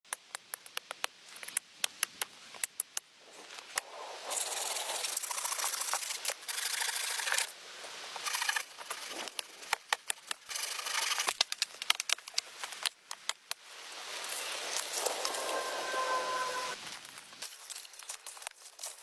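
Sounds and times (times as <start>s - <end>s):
brush rustling: 13.6s - 17.0s.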